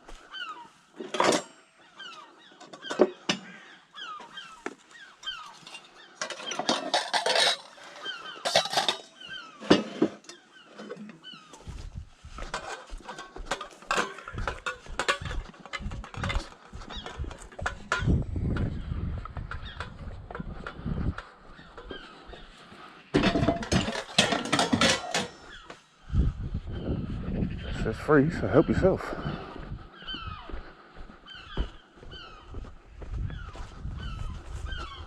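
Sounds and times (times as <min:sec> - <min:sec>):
birds honking: 0:00.0 - 0:18.2, 0:19.4 - 0:26.1, 0:26.7 - 0:35.0
scrap metal clattering: 0:06.2 - 0:10.2, 0:23.2 - 0:25.6.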